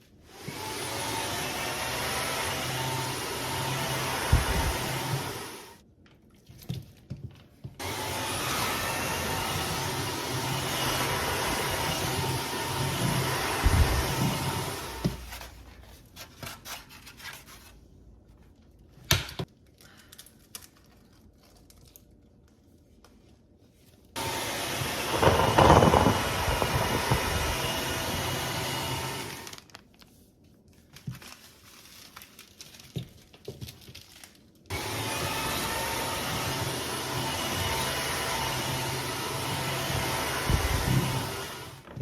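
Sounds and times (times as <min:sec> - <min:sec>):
vacuum mop running: 0:00.3 - 0:05.8, 0:07.8 - 0:15.4, 0:24.2 - 0:29.6, 0:34.7 - 0:42.0.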